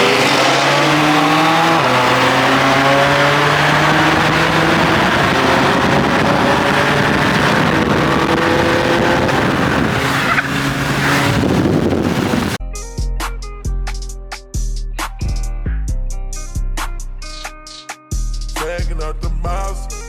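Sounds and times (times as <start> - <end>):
car engine droning: 0.0 - 12.6
road noise: 0.0 - 12.6
wind noise: 0.0 - 12.6.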